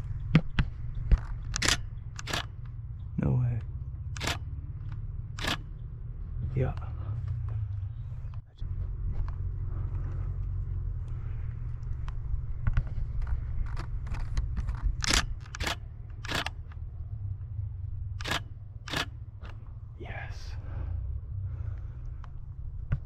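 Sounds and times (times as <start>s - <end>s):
low rumble: 0.0s - 23.0s
camera shutter clicks: 1.5s - 2.6s, 4.2s - 4.4s, 5.4s - 5.6s, 15.0s - 16.6s, 18.2s - 19.6s.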